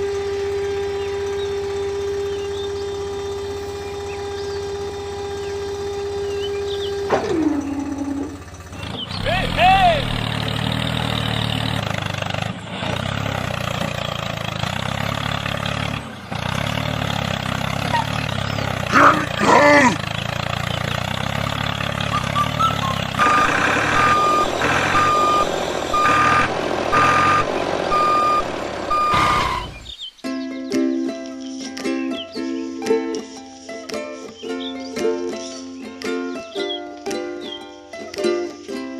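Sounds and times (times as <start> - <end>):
tractor engine running: 0.0 - 30.2
reversing beeper: 6.2 - 8.5, 22.0 - 30.0
loud warbling sound: 7.2 - 8.4, 22.0 - 29.9
music: 30.2 - 38.9.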